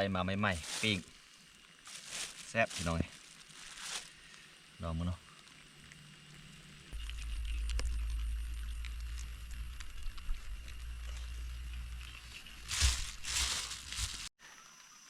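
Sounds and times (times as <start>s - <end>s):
rustling: 0.5s - 4.5s, 6.9s - 14.3s
low rumble on microphone: 6.9s - 14.3s.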